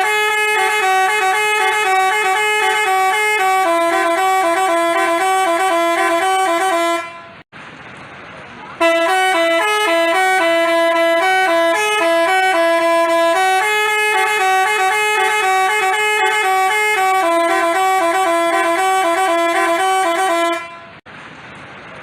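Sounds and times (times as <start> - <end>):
bus horn playing a quick melody: 0.0 - 7.4, 8.8 - 21.0.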